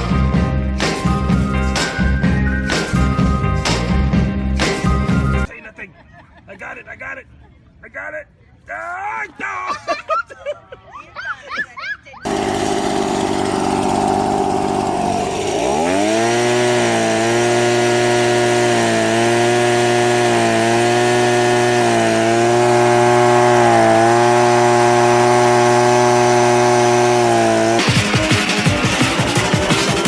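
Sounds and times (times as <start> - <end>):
motor spinning: 12.3 - 27.8.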